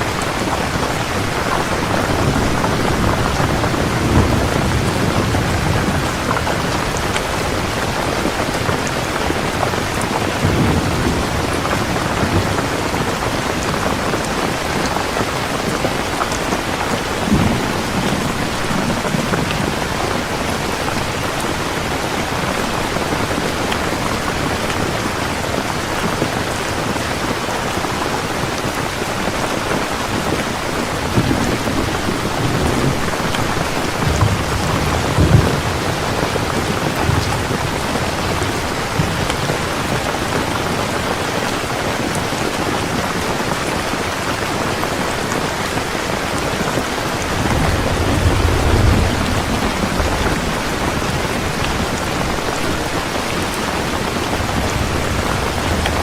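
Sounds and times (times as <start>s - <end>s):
low thunder rumbles: 0.0s - 26.9s, 30.2s - 41.3s, 47.0s - 56.0s
dense rainfall: 0.0s - 56.0s.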